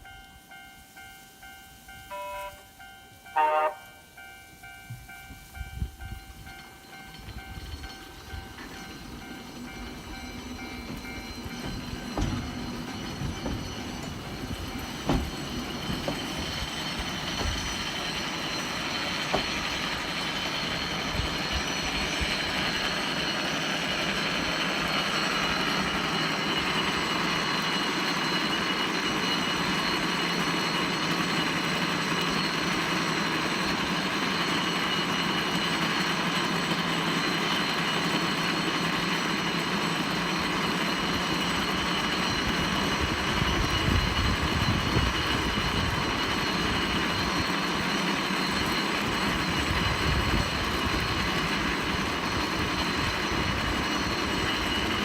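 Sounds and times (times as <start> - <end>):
funicular car running on rails: 4.2 - 55.0.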